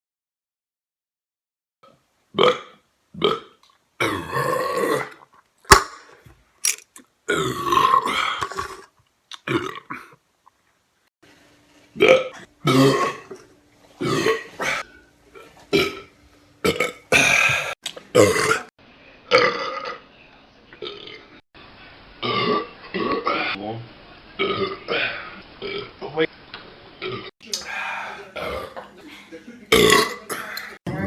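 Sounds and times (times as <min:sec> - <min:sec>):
men burping: 0:07.3 - 0:10.2, 0:29.7 - 0:30.8.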